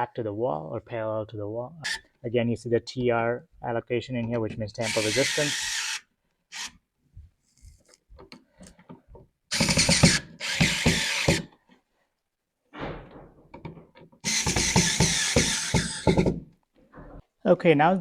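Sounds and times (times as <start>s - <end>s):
electric screwdriver running: 4.9s - 6.0s.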